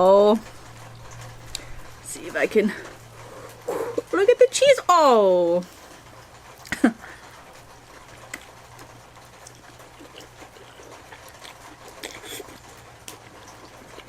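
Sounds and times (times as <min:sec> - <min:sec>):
low steady hum: 0:00.0 - 0:14.0
wet mouth eating sounds: 0:03.3 - 0:04.1, 0:08.0 - 0:14.0
faint clicks and smacks: 0:07.9 - 0:14.0.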